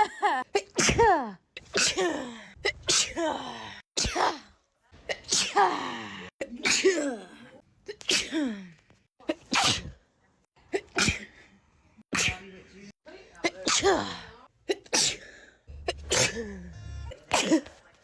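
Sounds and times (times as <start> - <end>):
person sneezing: 0.6 - 4.5, 5.1 - 7.2, 7.9 - 8.6, 9.3 - 10.0, 10.8 - 11.4, 12.1 - 12.5, 13.5 - 17.8.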